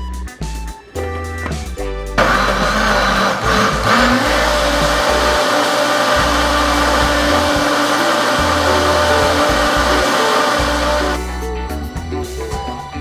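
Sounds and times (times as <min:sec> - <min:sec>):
blender running: 0:02.2 - 0:11.2.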